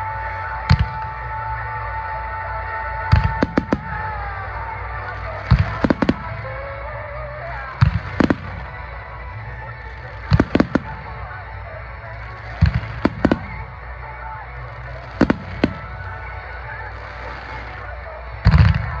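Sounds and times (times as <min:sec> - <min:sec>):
fireworks bursting with sharp bangs: 0:00.0 - 0:01.4, 0:02.8 - 0:19.0.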